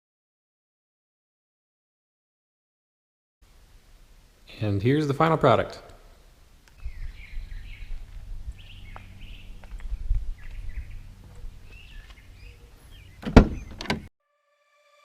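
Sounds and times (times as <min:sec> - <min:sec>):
birds chirping: 0:04.6 - 0:14.1
low rumble: 0:06.8 - 0:12.6.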